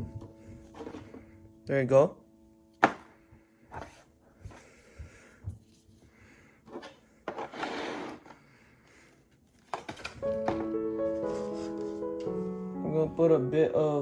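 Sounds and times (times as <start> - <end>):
piano music: 0.0 - 4.2, 10.0 - 14.0
handheld vacuum handling knocks: 2.8 - 3.2.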